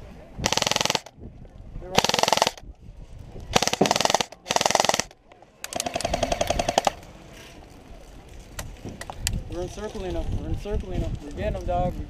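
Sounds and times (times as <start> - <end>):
airsoft gun full-auto bursts: 0.4 - 1.1, 2.0 - 2.6, 3.5 - 7.0.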